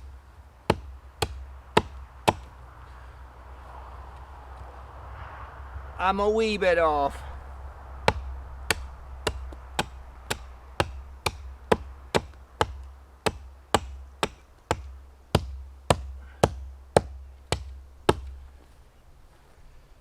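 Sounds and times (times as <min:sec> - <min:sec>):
axe chopping into tree trunk: 0:00.7 - 0:02.5, 0:08.1 - 0:18.4.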